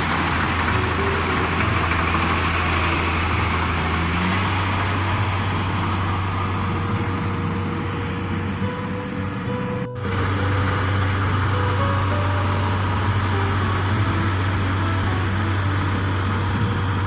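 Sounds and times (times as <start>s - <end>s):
threshing machinery rushing: 0.0s - 8.7s
combine harvester engine running: 0.0s - 17.0s.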